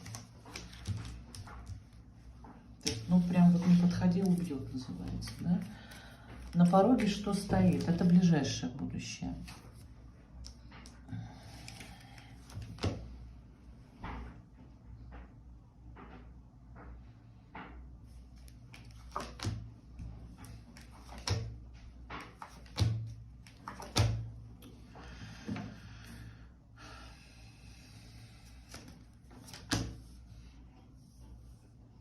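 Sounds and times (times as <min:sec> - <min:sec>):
cards shuffling: 0:00.0 - 0:02.0, 0:02.8 - 0:08.2, 0:18.4 - 0:21.5, 0:22.2 - 0:24.2, 0:28.5 - 0:30.1
cards tapping on a table: 0:22.1 - 0:24.2, 0:28.7 - 0:30.0.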